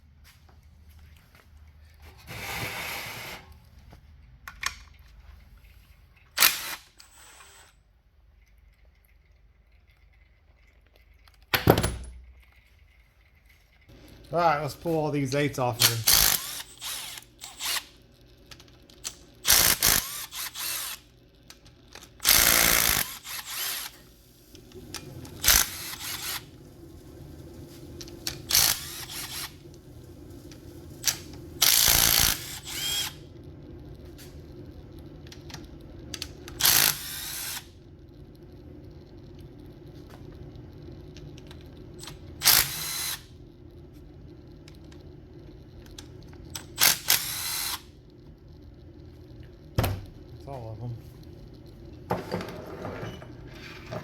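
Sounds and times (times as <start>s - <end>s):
power driver spinning out bolts: 22.2s - 24.0s, 25.3s - 26.5s.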